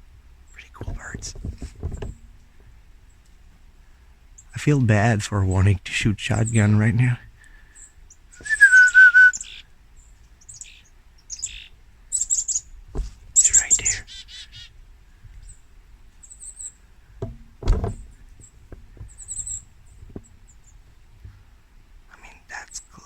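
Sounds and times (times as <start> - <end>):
chickadees calling: 0.0 - 21.8
low thumps: 0.6 - 3.8, 12.7 - 14.0, 14.7 - 22.1.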